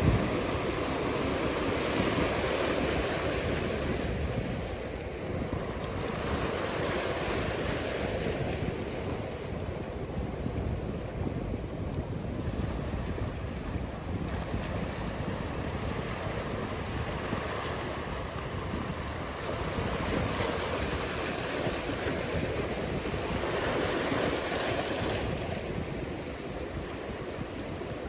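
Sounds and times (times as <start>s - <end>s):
ocean waves breaking: 0.0s - 28.0s.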